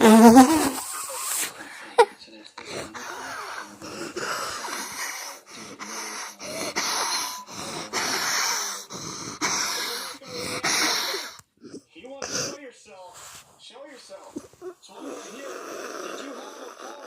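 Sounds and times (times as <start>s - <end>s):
person wheeze-laughing: 0.0s - 1.5s.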